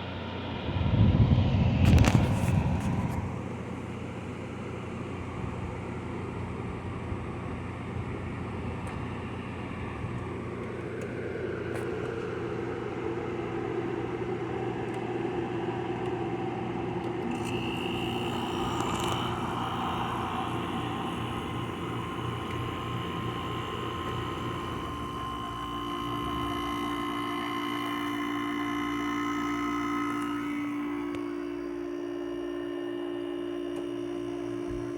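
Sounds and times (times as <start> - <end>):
air conditioner humming: 0.0 - 34.9.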